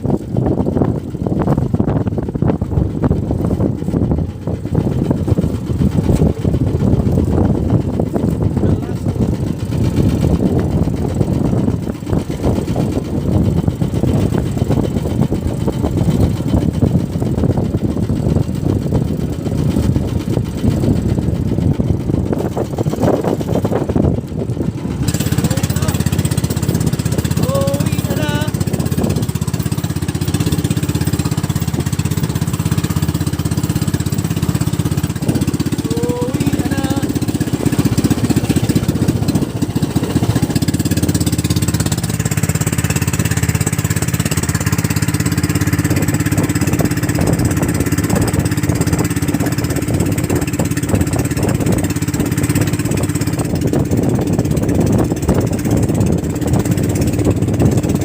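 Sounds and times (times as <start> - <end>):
boat engine chugging: 0.0 - 58.0.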